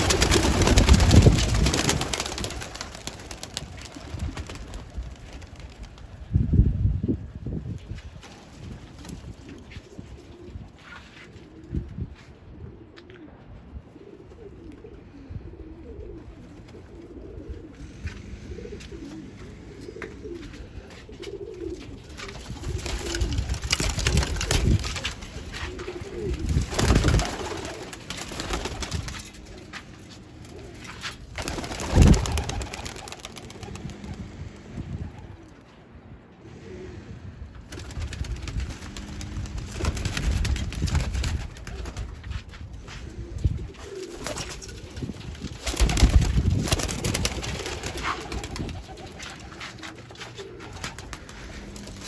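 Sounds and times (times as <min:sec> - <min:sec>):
pigeons cooing: 0:09.2 - 0:40.1, 0:42.8 - 0:52.0.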